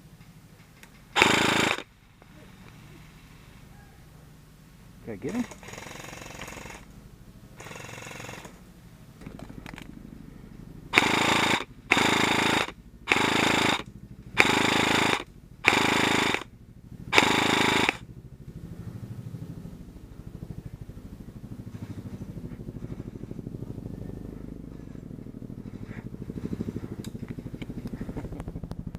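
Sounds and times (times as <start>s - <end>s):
airsoft gun firing bursts: 1.1s - 1.9s, 5.3s - 6.9s, 7.6s - 8.6s, 10.9s - 16.5s, 17.1s - 18.1s.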